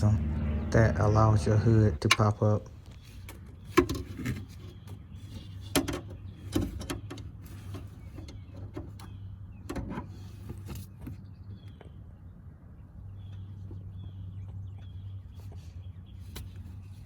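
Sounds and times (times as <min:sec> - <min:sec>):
steady low hum: 0:00.0 - 0:03.4.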